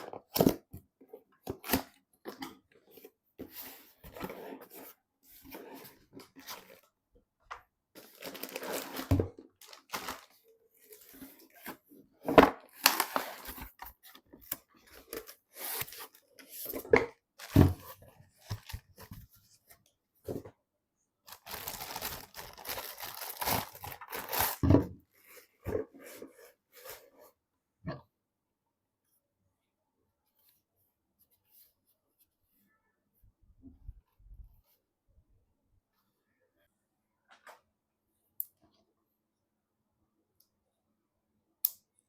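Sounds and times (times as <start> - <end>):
packaging rustling and tearing: 8.0 - 11.0, 21.3 - 24.6.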